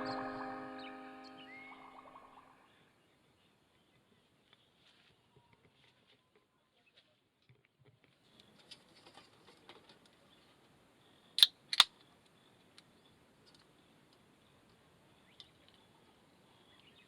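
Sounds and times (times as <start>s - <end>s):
sharp clicks: 11.4s - 11.9s.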